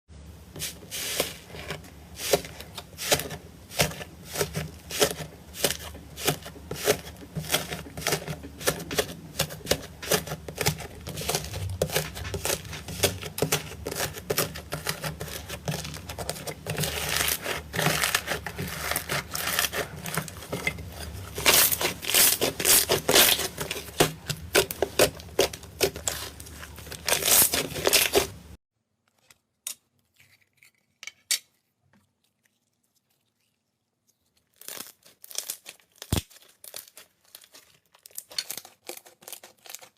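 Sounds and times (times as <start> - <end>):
slime crackling and popping: 34.4 - 39.9.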